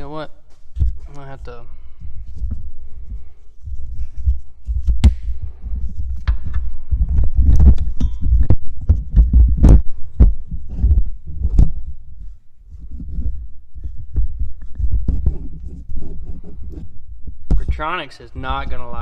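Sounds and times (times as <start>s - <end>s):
loud low thumps and knocks: 4.8s - 11.9s.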